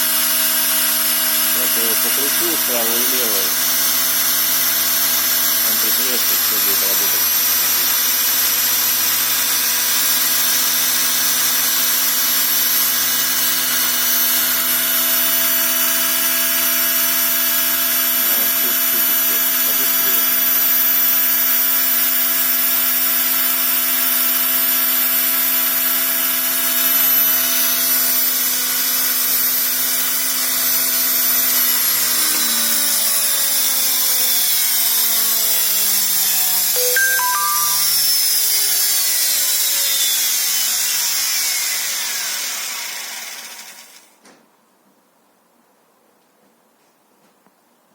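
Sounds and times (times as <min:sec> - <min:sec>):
electric motor whine: 0:31.6 - 0:33.9.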